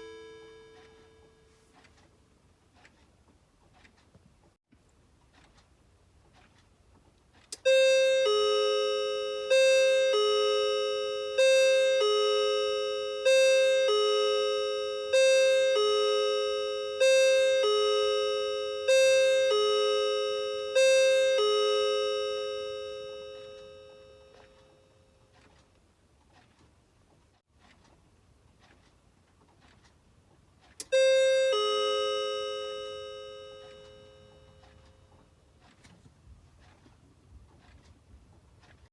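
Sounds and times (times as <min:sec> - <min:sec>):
clock striking ding-dong: 0:00.0 - 0:01.6, 0:07.6 - 0:25.0, 0:30.8 - 0:35.2
faint clock ticking: 0:00.0 - 0:38.9.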